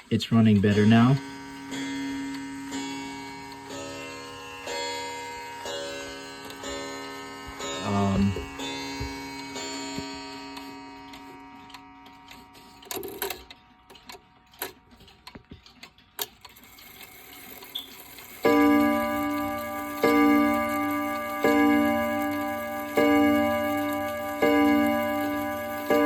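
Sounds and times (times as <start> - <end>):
clock ticking: 0.0 - 4.8, 17.7 - 26.0
clock chime ringing: 0.0 - 12.5, 17.6 - 26.0.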